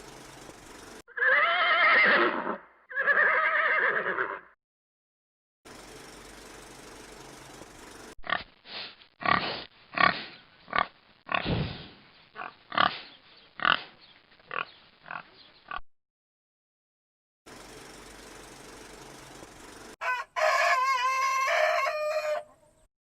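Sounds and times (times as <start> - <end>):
pig grunting and squealing: 9.2 - 11.8, 12.4 - 13.9.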